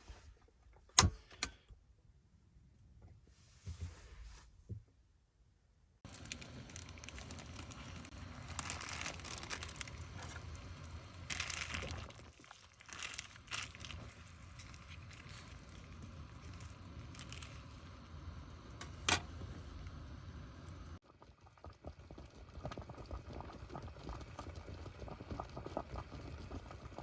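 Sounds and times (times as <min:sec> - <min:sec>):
plastic packaging crinkling: 0:06.1 - 0:10.6, 0:11.2 - 0:15.8.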